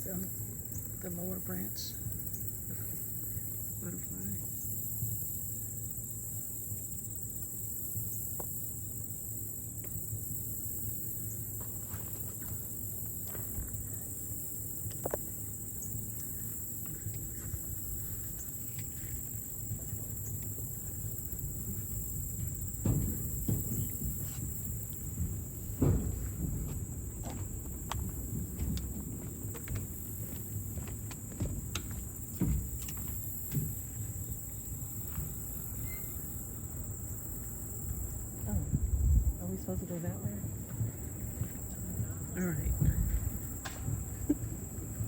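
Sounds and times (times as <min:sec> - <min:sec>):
high-pitched insect chorus: 0:00.0 - 0:45.0
light footsteps on path: 0:11.0 - 0:45.0
low thumps: 0:21.1 - 0:34.4.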